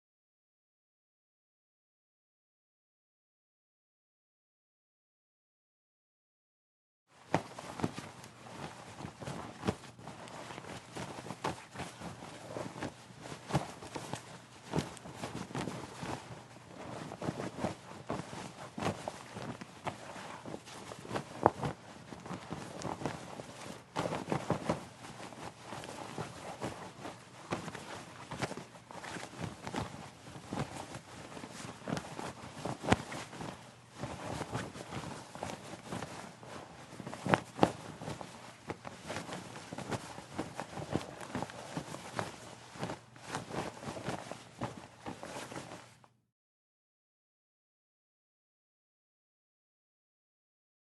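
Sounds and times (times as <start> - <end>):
denim fabric rustling: 7.1 - 46.2
cloth snapping: 7.3 - 46.0.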